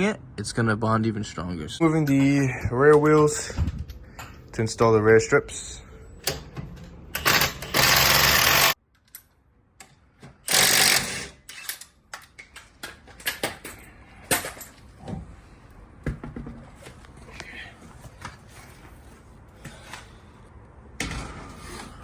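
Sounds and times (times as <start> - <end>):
impact wrench bursts: 7.2 - 8.8, 10.4 - 11.9.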